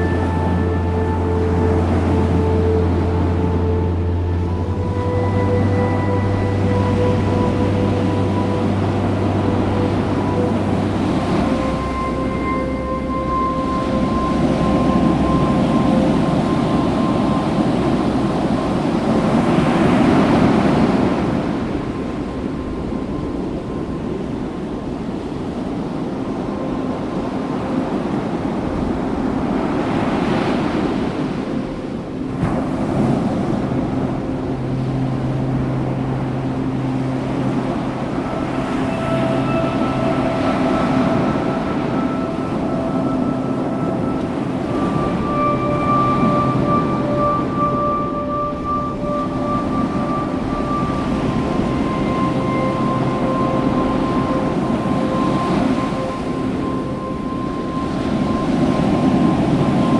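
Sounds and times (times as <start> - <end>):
ocean surf washing ashore: 0.0 - 59.9
held tones: 31.5 - 59.9.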